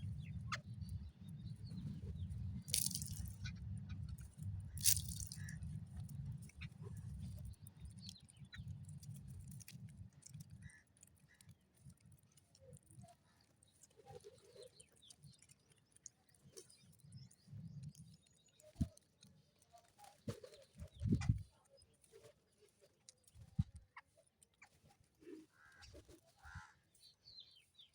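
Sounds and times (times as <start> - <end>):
birds chirping: 0.0 - 5.8.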